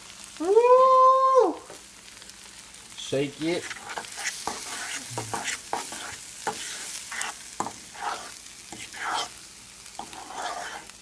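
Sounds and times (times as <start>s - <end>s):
food sizzling in frying pan: 0.0s - 11.0s
utensil scraping pan: 3.5s - 9.4s, 10.0s - 11.0s.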